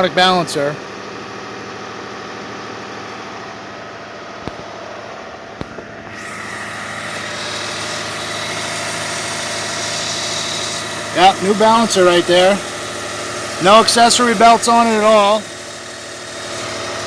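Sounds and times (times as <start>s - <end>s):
car engine idling: 0.0s - 6.5s.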